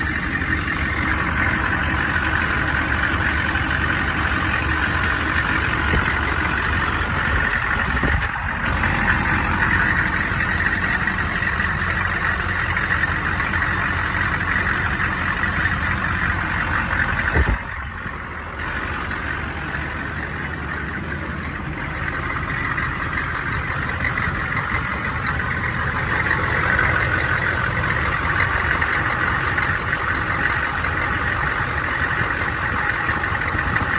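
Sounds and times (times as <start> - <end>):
engine idling: 0.0 - 33.9.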